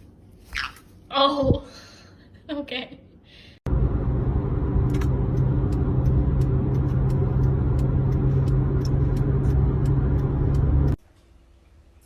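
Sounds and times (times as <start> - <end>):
vehicle running low rumble: 3.7 - 11.0.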